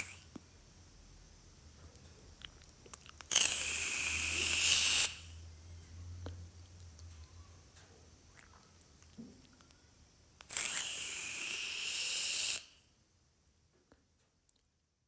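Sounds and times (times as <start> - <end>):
breathy hiss of vapour: 0.0 - 0.3, 3.3 - 5.4, 9.7 - 12.9.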